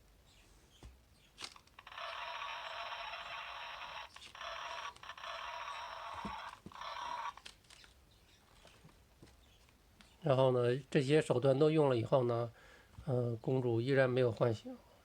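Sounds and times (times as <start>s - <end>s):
tinny electronic jackhammer effect: 1.4s - 7.5s.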